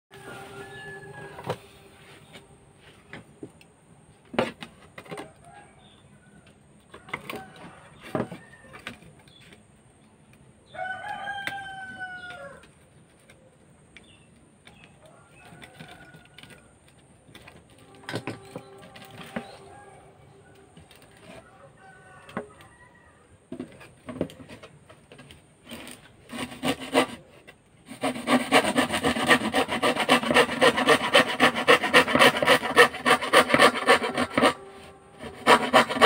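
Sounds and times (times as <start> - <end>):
rooster crowing: 0.1 - 1.7, 10.7 - 12.7, 17.8 - 23.4.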